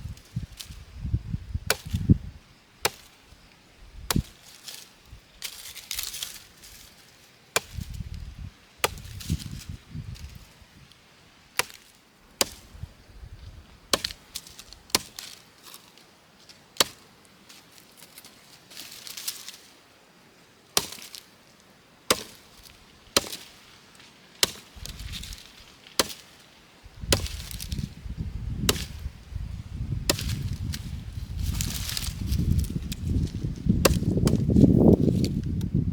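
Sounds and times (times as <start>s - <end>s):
chopping strikes: 4.1s - 4.4s, 11.6s - 12.6s, 13.9s - 15.4s, 20.8s - 21.2s, 22.1s - 22.5s, 23.2s - 23.5s, 24.4s - 25.4s, 26.0s - 26.3s, 27.0s - 27.8s, 28.6s - 29.1s, 30.1s - 33.0s, 33.8s - 35.4s.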